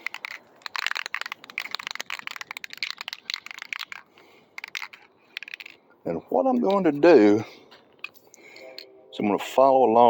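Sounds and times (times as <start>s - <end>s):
spray can rattling when shaken: 0.0s - 5.8s.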